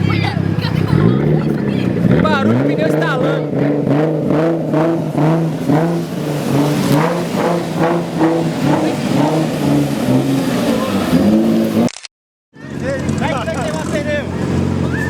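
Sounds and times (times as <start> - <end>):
car engine revving: 0.0 - 11.9, 12.6 - 15.0.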